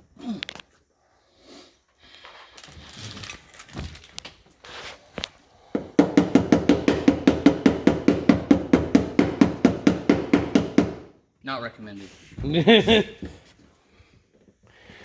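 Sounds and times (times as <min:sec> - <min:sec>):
rapid ringing hammer strikes: 0:06.0 - 0:11.1.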